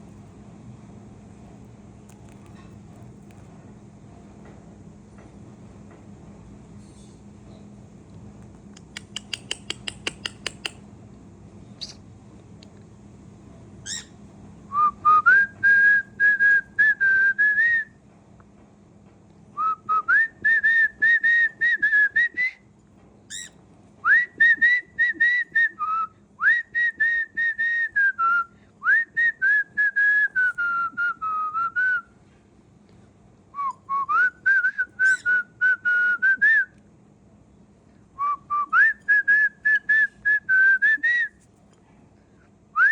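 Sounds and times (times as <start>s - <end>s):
quick clicks: 8.8s - 10.8s
cockatiel whistling a tune: 11.8s - 12.0s, 13.9s - 14.1s, 23.3s - 23.5s, 33.6s - 36.6s.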